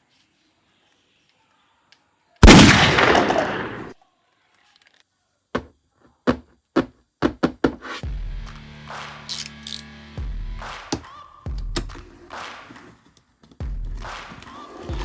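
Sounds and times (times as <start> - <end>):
loud blast: 2.4 - 3.9
sharp cracks: 2.4 - 4.0
music: 8.0 - 15.0.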